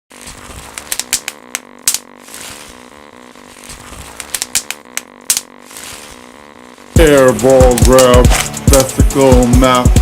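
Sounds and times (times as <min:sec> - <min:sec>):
soft background music: 0:06.8 - 0:10.0.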